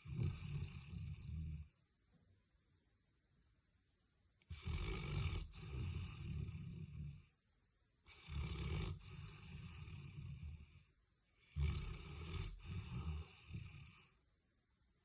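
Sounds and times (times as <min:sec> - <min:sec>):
dog snoring: 0:00.0 - 0:01.8, 0:04.5 - 0:07.3, 0:08.1 - 0:14.2.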